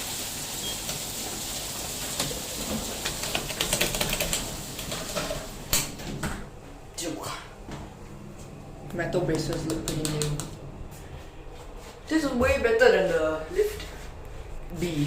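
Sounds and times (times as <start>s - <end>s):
elevator car running with hiss: 0.0s - 5.8s.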